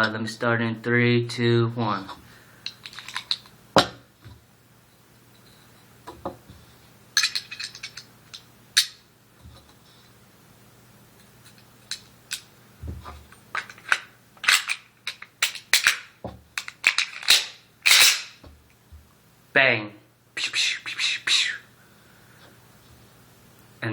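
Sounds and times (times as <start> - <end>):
pistol parts clicking and clacking: 2.6 - 3.6, 7.2 - 9.0, 11.9 - 12.5, 13.5 - 18.4.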